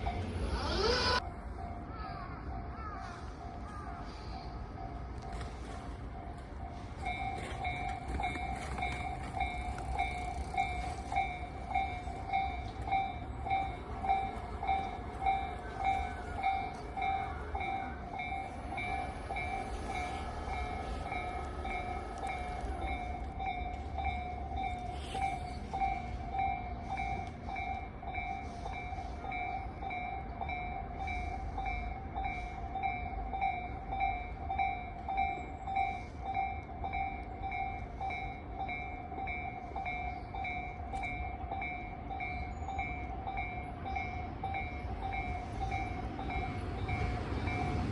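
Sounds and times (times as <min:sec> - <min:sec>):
train rumble and whine: 0:00.0 - 0:47.9.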